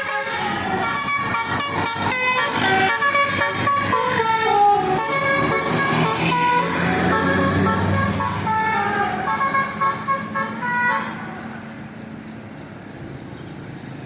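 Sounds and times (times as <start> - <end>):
musical vehicle horn melody: 0.0 - 11.6.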